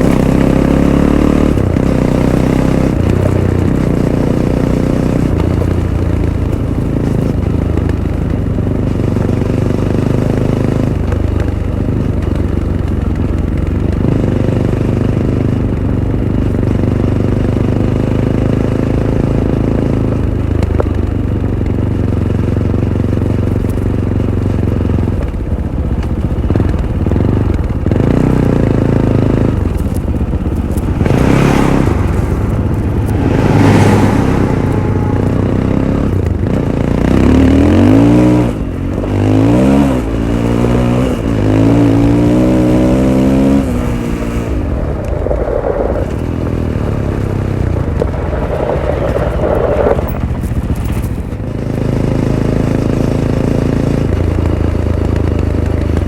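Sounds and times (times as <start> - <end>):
motorcycle engine revving: 0.0 - 56.0
rushing bursts: 29.6 - 37.0, 44.8 - 51.5.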